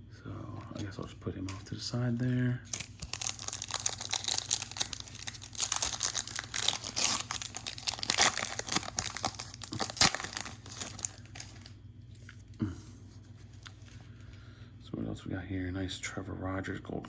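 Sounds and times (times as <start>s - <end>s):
foil wrapper tearing and crinkling: 2.7s - 11.7s.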